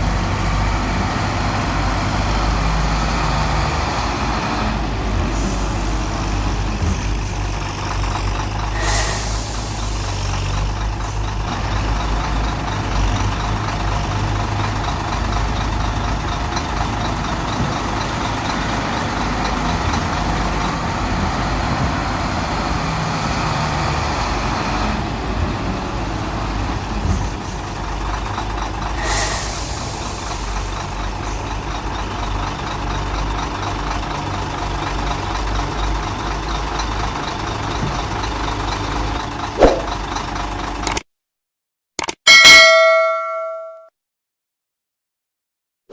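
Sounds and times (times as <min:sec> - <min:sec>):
diesel engines running: 0:00.0 - 0:41.0
sharp hiss of air: 0:08.8 - 0:10.1.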